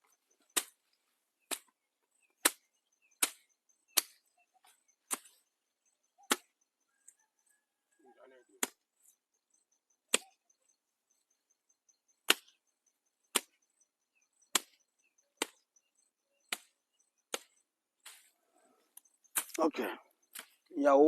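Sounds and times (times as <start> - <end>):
blade chopping through brush: 16.5 - 18.3, 19.3 - 19.7.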